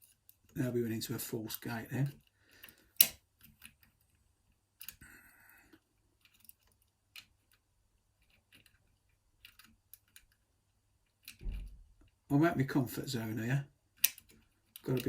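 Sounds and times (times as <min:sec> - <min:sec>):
lock pick clicking and scraping: 0:02.1 - 0:05.0, 0:06.2 - 0:10.4, 0:11.0 - 0:12.2, 0:13.9 - 0:15.0.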